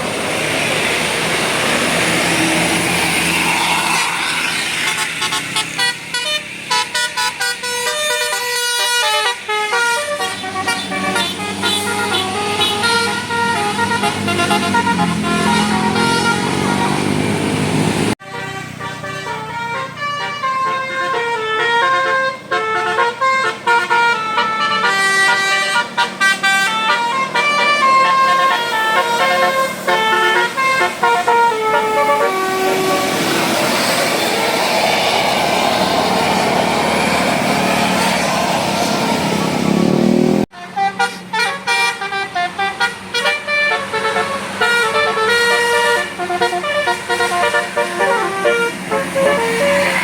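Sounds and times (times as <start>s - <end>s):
rough noisy sound: 0.0s - 6.5s, 32.3s - 40.5s
multi-tone bus horn tune: 1.9s - 50.0s.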